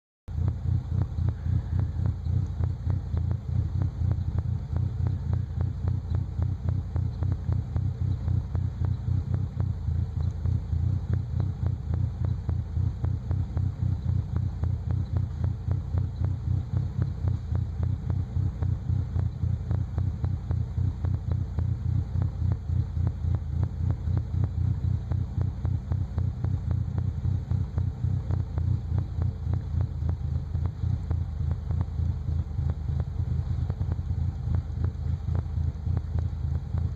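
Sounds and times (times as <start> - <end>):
engine idling roughly: 0.3 - 36.9.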